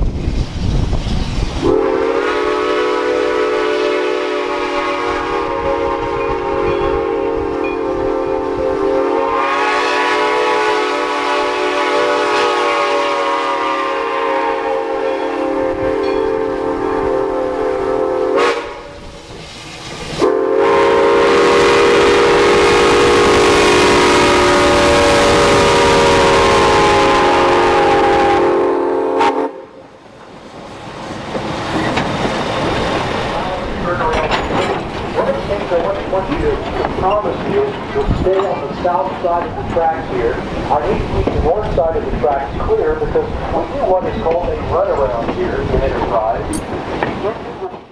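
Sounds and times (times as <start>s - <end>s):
wind buffeting microphone: 0.0s - 2.7s, 4.5s - 9.3s, 15.3s - 28.6s, 30.5s - 47.5s
steam locomotive chime whistle: 1.6s - 19.1s, 20.2s - 29.9s.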